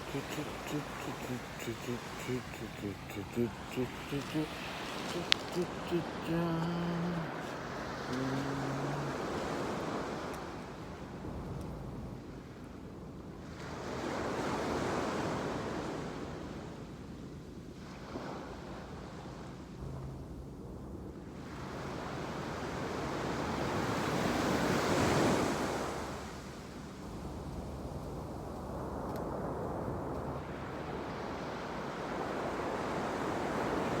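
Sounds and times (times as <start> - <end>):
surf breaking on beach: 0.0 - 11.5.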